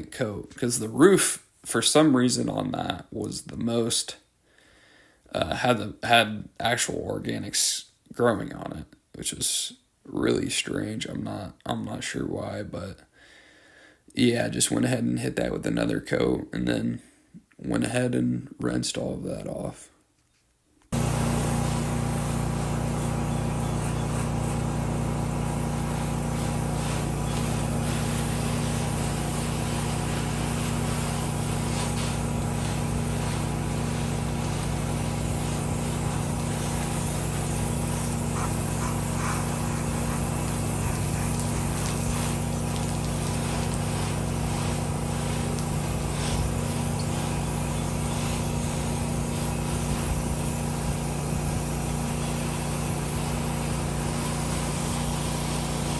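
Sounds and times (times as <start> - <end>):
pressure washer engine running: 20.9 - 55.9.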